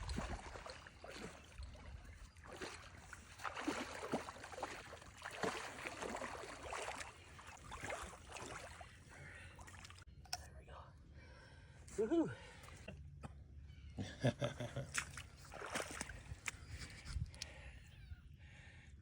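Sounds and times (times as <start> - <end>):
water splashing and sloshing: 0.0 - 10.1, 14.8 - 17.3.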